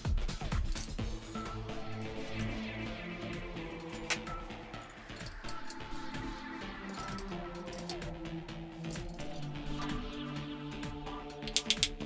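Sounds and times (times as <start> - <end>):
background music held notes: 0.0 - 12.0.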